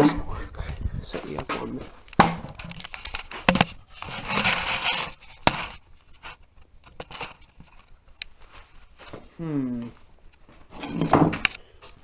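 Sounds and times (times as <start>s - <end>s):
scraping rub: 2.5s - 6.4s.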